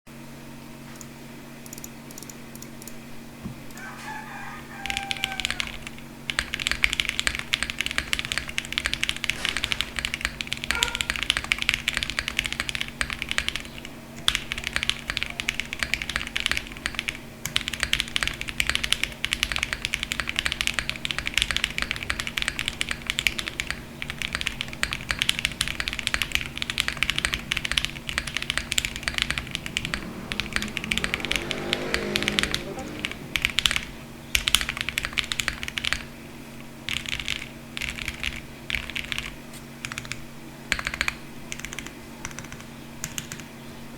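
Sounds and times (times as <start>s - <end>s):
typing on mechanical keyboard: 5.0s - 36.1s, 36.9s - 43.5s.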